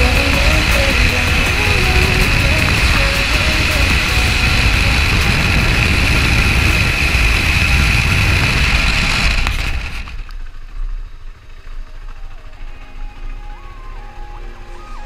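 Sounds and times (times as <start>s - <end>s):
motorcycle engine running: 0.0s - 14.7s
loud steady rush: 0.0s - 15.0s.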